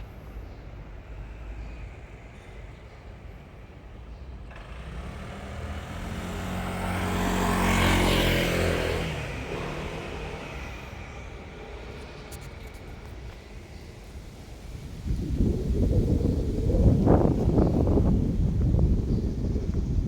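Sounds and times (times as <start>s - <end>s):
vehicle passing by: 4.4s - 13.8s.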